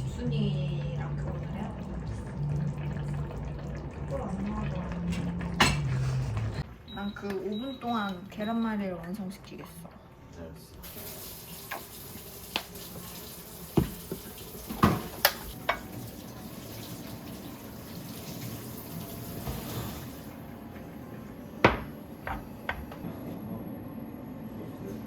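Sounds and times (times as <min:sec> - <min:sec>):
dishes clinking and knocking: 0:05.1 - 0:06.0, 0:13.8 - 0:15.9, 0:21.6 - 0:23.0
tap running into sink: 0:11.6 - 0:16.0, 0:21.6 - 0:23.0.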